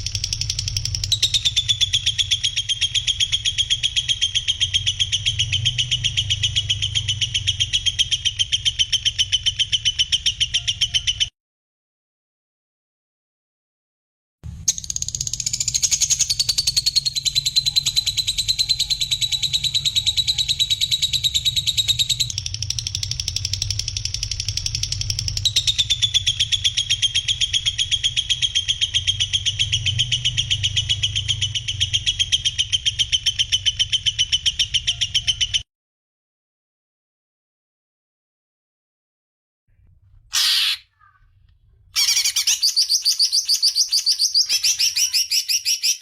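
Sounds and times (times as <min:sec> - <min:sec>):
songbird trilling: 0:00.1 - 0:11.3, 0:40.3 - 0:41.3, 0:42.0 - 0:46.0.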